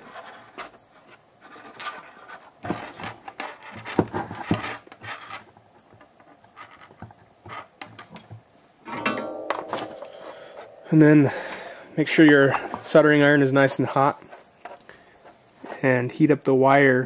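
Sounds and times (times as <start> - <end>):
rubbing and scratching: 0.0 - 8.4, 12.2 - 16.0.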